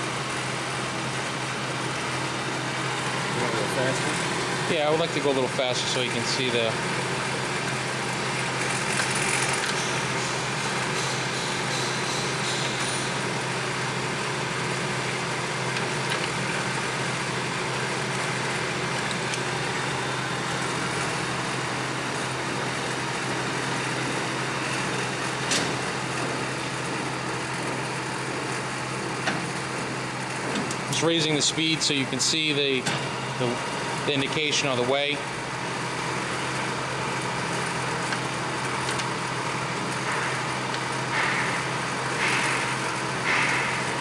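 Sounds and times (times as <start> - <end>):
lathe running with steady hum: 0.0 - 44.0.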